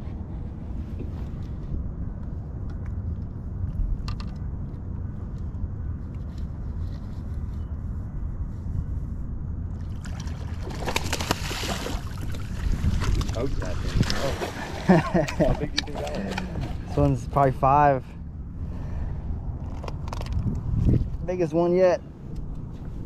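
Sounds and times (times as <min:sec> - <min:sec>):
steady low rumble: 0:00.0 - 0:23.0
water lapping around boat: 0:09.8 - 0:17.3
water splashing: 0:09.9 - 0:16.8.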